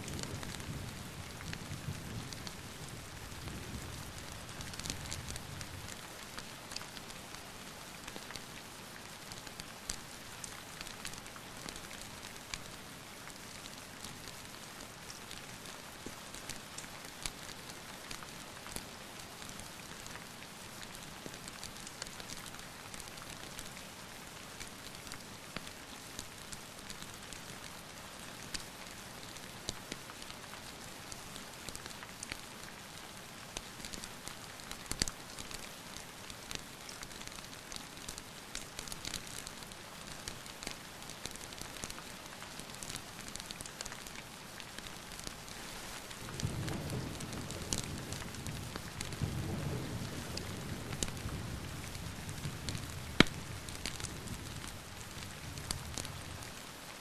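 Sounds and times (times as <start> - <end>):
steady rain falling: 0.0 - 57.0
wood fire crackling: 24.6 - 57.0.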